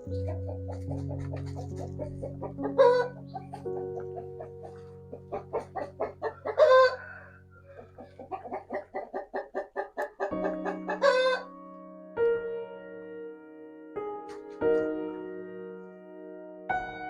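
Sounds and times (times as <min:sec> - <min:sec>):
chicken clucking and squawking: 0:00.0 - 0:11.5
soft background music: 0:00.0 - 0:17.0.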